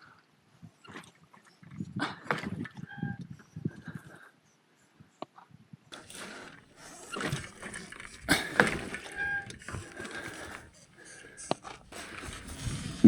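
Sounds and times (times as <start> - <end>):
bicycle knocks and rattles: 6.0 - 13.0.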